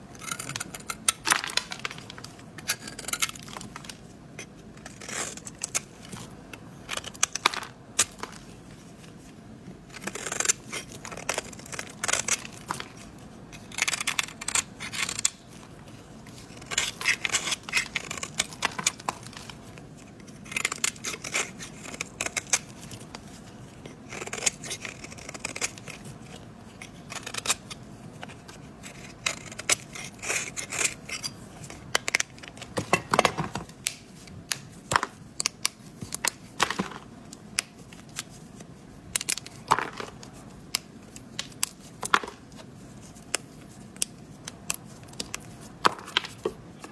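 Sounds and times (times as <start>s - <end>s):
knife scraping soap: 0.1s - 7.4s, 9.9s - 32.6s.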